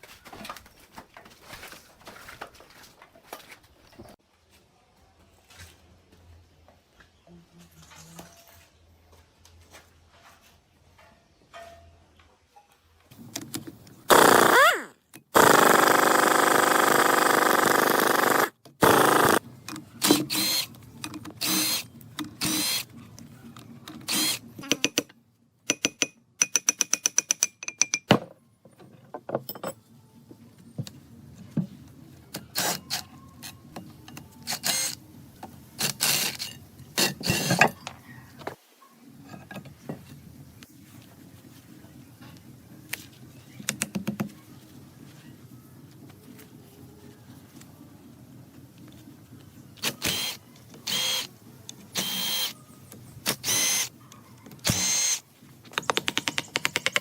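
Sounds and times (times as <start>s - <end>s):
power tool whining: 14.1s - 19.4s, 24.0s - 24.7s, 49.8s - 51.3s, 51.9s - 52.5s, 53.2s - 53.9s, 54.6s - 55.2s
tools and metal parts knocking: 25.7s - 28.2s, 28.8s - 29.8s, 55.7s - 57.0s.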